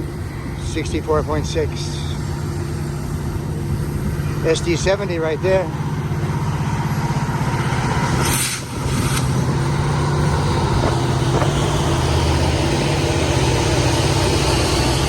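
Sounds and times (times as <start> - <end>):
locomotive engine drone: 0.0 - 15.0
brief hiss: 8.2 - 9.4.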